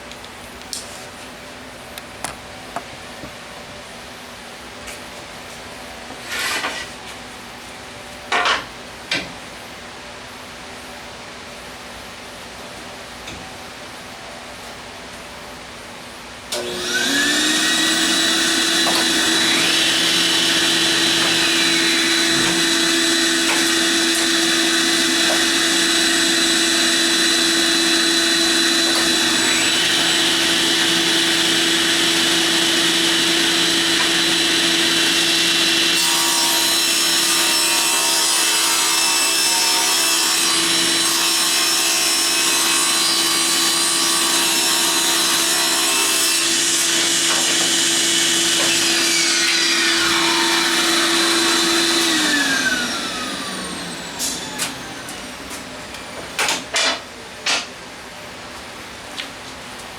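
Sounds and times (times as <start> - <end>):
power saw cutting wood: 16.5 - 55.8.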